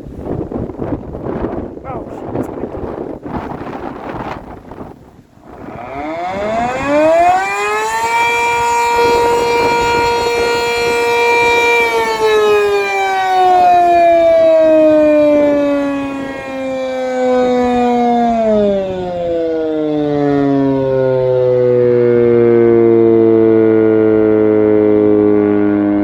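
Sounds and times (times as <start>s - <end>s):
electromechanical siren winding: 5.7s - 19.6s.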